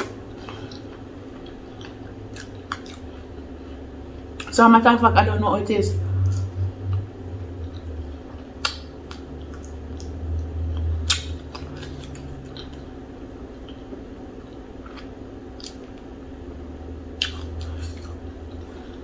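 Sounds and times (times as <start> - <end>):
low steady hum: 0.0 - 19.0
wet chewing mouth sounds: 0.2 - 4.5, 6.2 - 12.9, 17.2 - 19.0.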